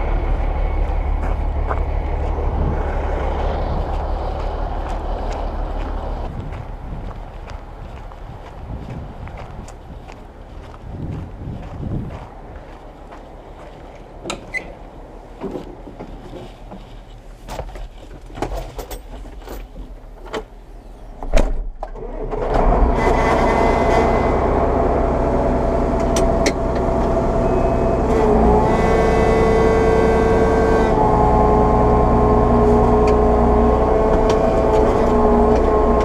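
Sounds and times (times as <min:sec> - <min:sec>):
diesel engine starting and revving: 0:00.0 - 0:09.6, 0:21.8 - 0:36.0.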